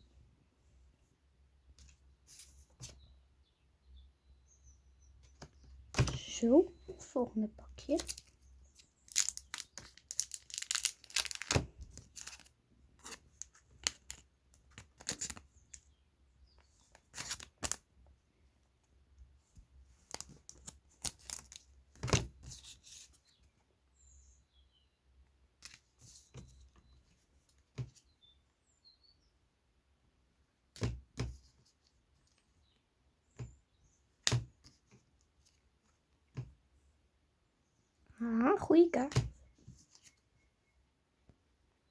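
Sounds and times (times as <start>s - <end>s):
cards rustling: 7.9s - 15.7s, 16.8s - 17.8s, 20.0s - 22.9s
wrapper tearing and crinkling: 9.1s - 12.5s, 20.1s - 21.6s.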